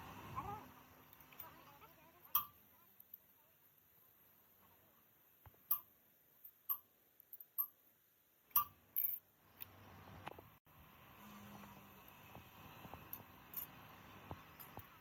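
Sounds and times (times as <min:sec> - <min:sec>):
faint steady noise: 0:00.0 - 0:15.0
metallic tool clinks and taps: 0:05.5 - 0:05.9, 0:06.5 - 0:07.8, 0:13.1 - 0:15.0.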